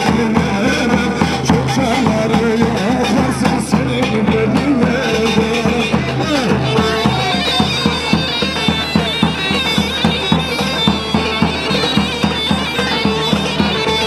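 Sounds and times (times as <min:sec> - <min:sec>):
reedy wind instrument melody: 0:00.0 - 0:14.0
regular drum beat: 0:00.0 - 0:14.0.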